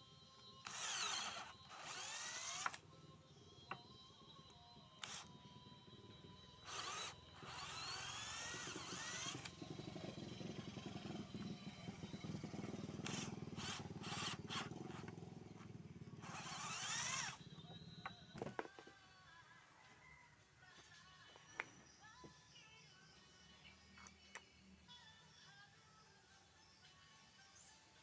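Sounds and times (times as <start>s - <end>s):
electric drill motor humming: 0.6s - 2.9s, 4.9s - 11.9s, 13.0s - 15.6s, 16.2s - 18.8s.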